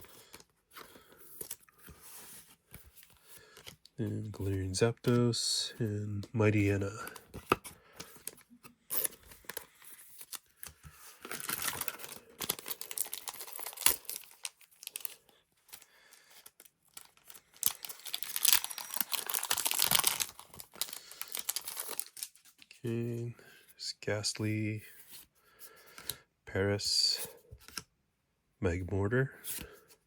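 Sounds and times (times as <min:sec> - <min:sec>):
wrapper tearing and crinkling: 0:11.2 - 0:15.2, 0:16.9 - 0:22.4.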